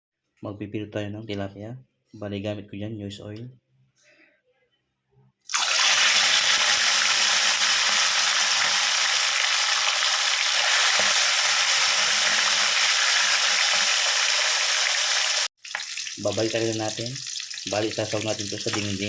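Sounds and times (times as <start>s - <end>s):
fish sizzling in hot oil: 5.5s - 19.0s.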